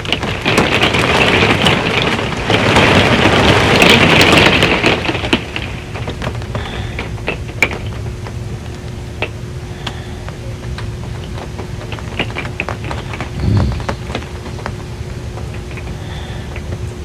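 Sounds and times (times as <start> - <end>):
raindrops tapping on metal roof: 0.0 - 17.0
steady low rumble: 12.9 - 17.0.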